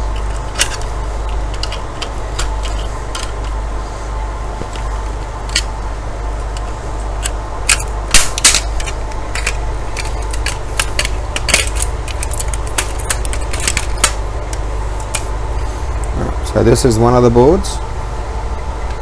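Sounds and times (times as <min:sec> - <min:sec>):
plastic and metal parts clicking: 0:00.0 - 0:03.6, 0:05.5 - 0:05.7, 0:06.4 - 0:15.3
low hum: 0:00.0 - 0:19.0.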